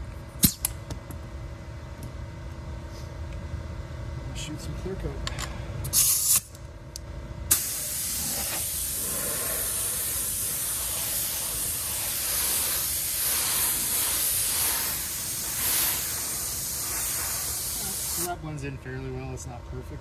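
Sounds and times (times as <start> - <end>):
hiss of spray: 5.9 - 6.4, 7.5 - 18.3.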